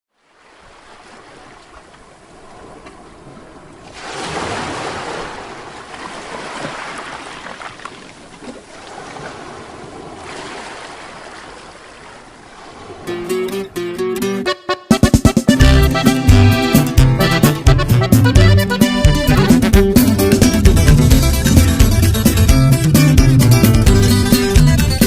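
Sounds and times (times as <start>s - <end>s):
steady rushing noise: 20.4s - 24.6s.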